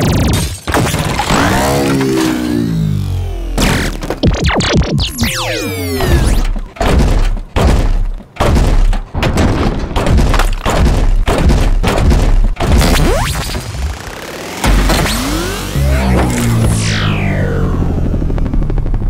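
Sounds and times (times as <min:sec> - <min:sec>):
mechanical whines: 0:01.1 - 0:08.4, 0:12.7 - 0:19.0
heavy metallic clanks: 0:06.0 - 0:12.8.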